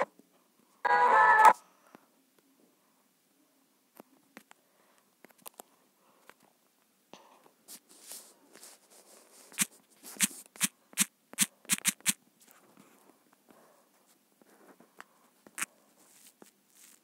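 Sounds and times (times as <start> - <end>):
sharp short clicks: 9.6 - 12.2
faint scraping and tapping: 12.4 - 17.0.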